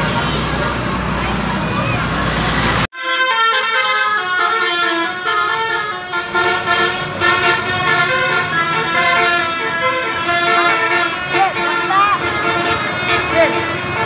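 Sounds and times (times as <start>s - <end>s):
bus horn playing a melodic tune: 2.9s - 14.0s.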